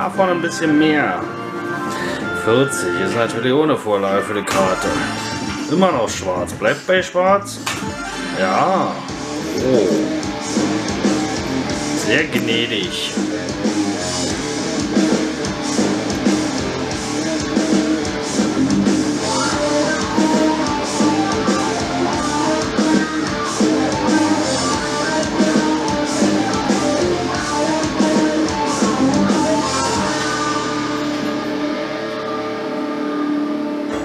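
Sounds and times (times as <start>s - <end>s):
guitar-led game music: 0.0s - 34.0s.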